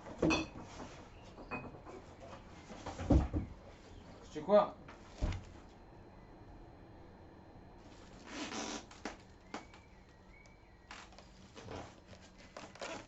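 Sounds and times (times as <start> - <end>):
faint rustling of packaging: 7.8 - 13.0.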